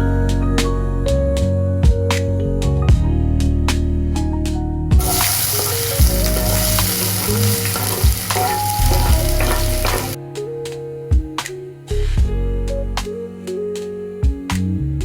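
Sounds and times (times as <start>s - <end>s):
chicken sizzling in hot oil: 5.0s - 10.2s
soft guitar music: 5.0s - 15.0s.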